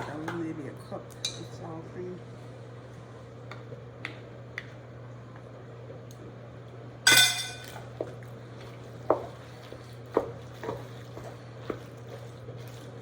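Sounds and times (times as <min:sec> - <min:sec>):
utensil clanking on dish: 0:07.1 - 0:08.2
spoon knocking while stirring: 0:09.0 - 0:09.5.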